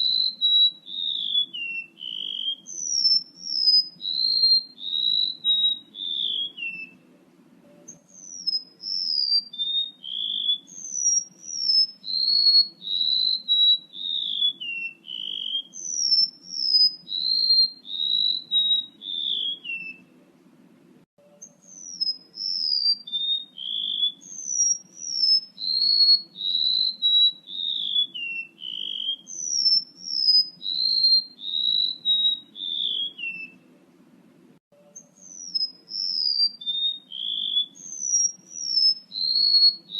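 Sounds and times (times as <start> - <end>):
bird whistling descending notes: 0.0 - 7.0, 7.9 - 20.1, 21.4 - 33.6, 35.0 - 39.9
faint low hum: 0.0 - 9.2, 12.8 - 22.8, 31.4 - 36.1.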